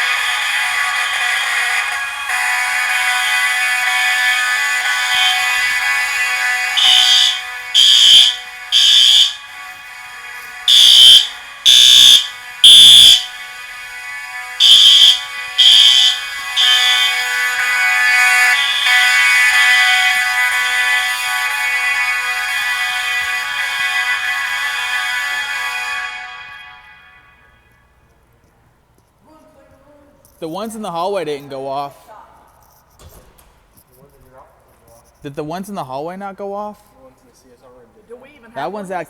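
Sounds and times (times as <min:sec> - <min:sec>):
steady many-toned alarm sound: 0:00.0 - 0:28.0
fire alarm horn blasts: 0:00.0 - 0:28.6.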